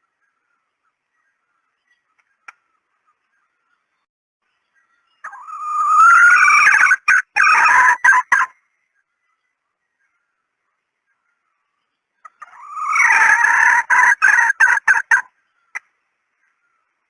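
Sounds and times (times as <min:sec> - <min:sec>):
junglefowl hen calling: 0:05.2 - 0:08.7, 0:12.2 - 0:15.9.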